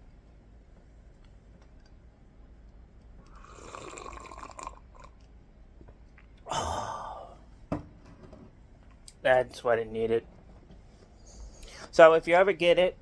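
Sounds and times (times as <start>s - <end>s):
person slurping coffee: 3.3s - 5.1s.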